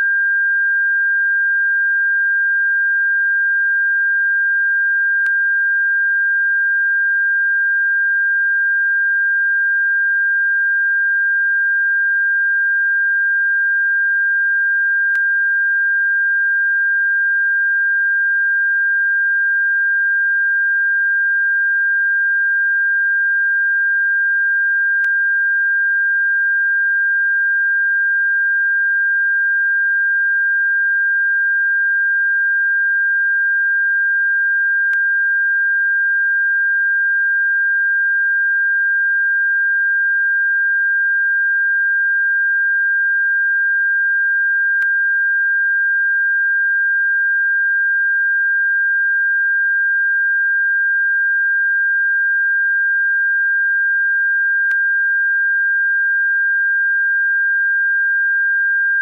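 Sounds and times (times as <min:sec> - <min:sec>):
faint click: 0:54.7 - 0:54.9.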